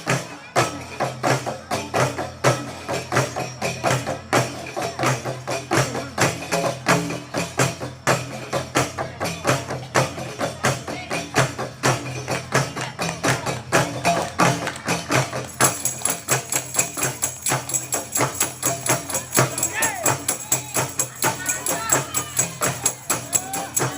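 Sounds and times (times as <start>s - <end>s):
frame drums and tambourine: 0.0s - 23.9s
bright high jingling: 15.3s - 23.9s.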